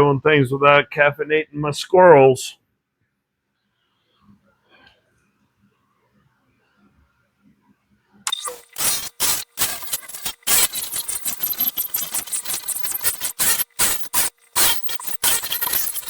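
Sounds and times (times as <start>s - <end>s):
brush scrubbing metal: 8.3s - 16.0s.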